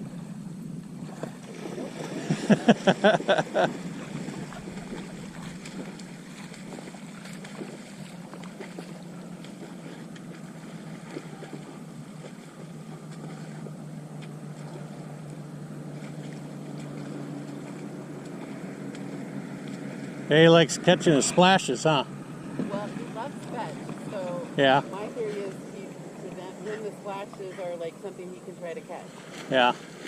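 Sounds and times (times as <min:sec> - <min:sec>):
distant engine droning: 0:00.0 - 0:30.0
faint ticks and splashes: 0:00.0 - 0:30.0
light wind: 0:00.0 - 0:30.0.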